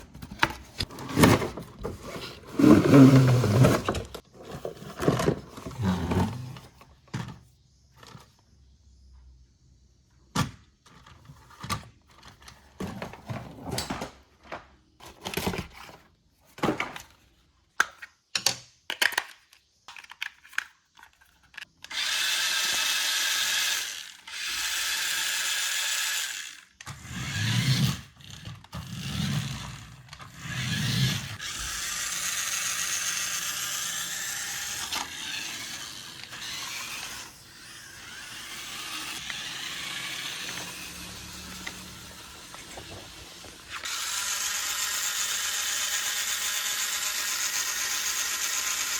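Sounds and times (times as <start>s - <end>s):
plastic toy parts clicking: 17.8s - 27.0s
small electric toy motor running: 21.8s - 48.9s.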